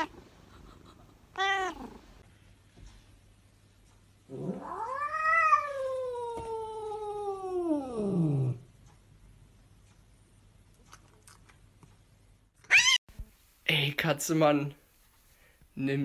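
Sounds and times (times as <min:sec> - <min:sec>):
cat yowling: 0:04.6 - 0:08.0, 0:12.6 - 0:13.0.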